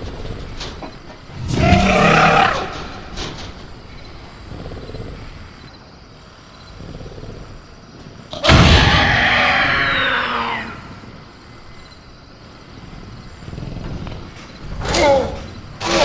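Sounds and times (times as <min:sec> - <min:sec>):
sudden loud bang: 0:08.4 - 0:09.5.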